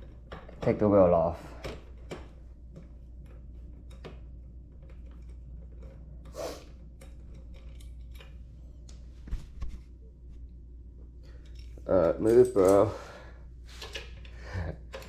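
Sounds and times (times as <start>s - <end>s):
steady low hum: 0.0s - 15.0s
metal tools clicking: 11.4s - 13.0s.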